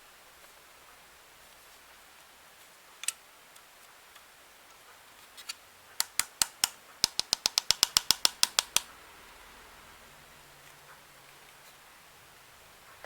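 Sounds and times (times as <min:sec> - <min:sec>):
sharp clicks: 0:06.0 - 0:08.9.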